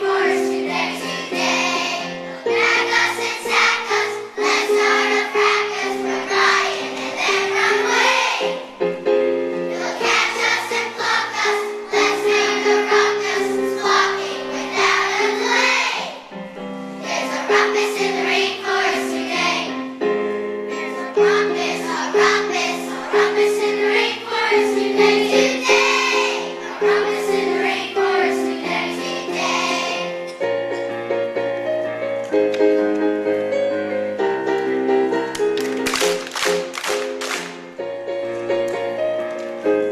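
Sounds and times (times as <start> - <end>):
choir singing: 0.0 - 8.9, 9.7 - 16.4, 17.0 - 20.0, 21.0 - 30.3.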